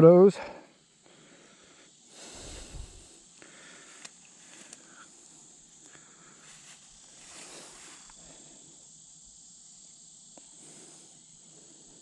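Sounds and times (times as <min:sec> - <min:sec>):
high-pitched insect chorus: 0:00.0 - 0:12.0
soft rustle: 0:02.2 - 0:05.3, 0:06.4 - 0:08.2.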